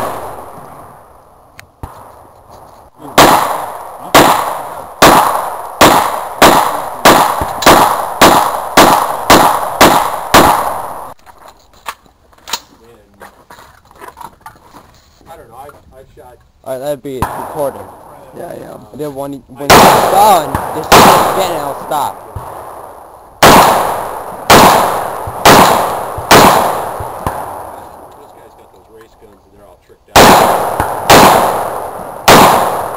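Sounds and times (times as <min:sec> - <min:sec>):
gunshots: 0:00.0 - 0:01.0, 0:03.0 - 0:11.2, 0:17.1 - 0:18.0, 0:19.6 - 0:28.2, 0:30.1 - 0:32.9.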